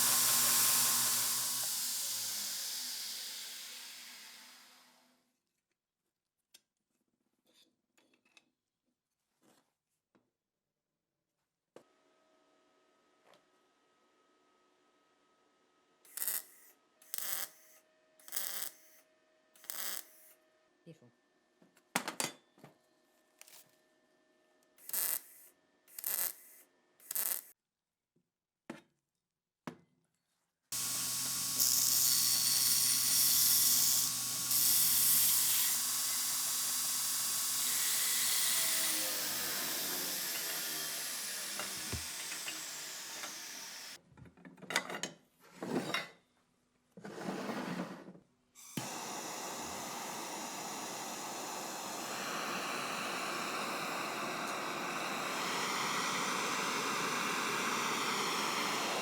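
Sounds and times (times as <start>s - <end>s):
power tool hissing and whining: 0.0s - 5.0s, 16.1s - 19.0s, 19.6s - 20.3s, 24.8s - 27.5s, 30.8s - 44.0s, 48.6s - 59.0s.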